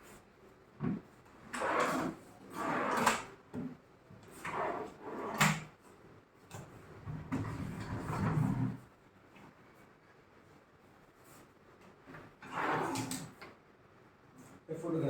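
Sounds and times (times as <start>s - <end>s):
wooden drawers sliding: 7.1s - 8.8s, 12.4s - 13.3s.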